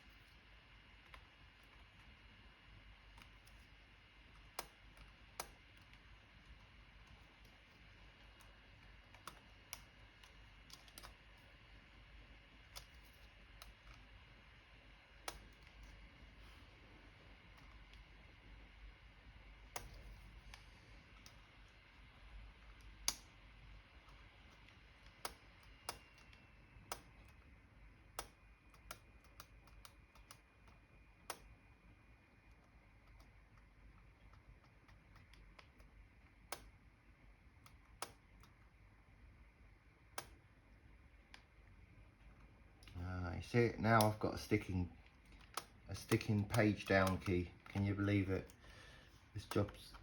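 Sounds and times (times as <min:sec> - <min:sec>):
keyboard key clicks: 0:45.3 - 0:48.6.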